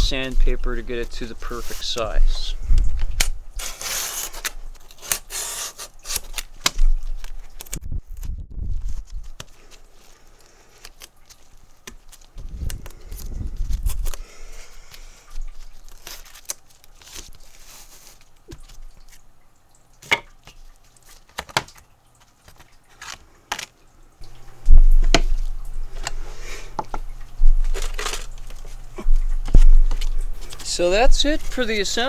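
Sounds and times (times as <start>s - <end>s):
sandpaper rustling and scraping: 0.0s - 2.7s, 3.6s - 7.8s, 8.8s - 18.9s.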